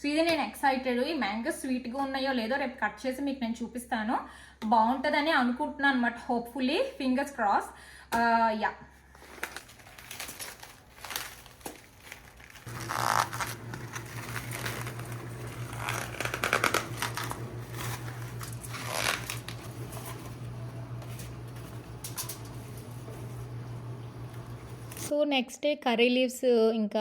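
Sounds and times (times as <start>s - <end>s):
rustling and crinkling handling: 9.0s - 25.1s
steady low hum: 12.7s - 25.1s.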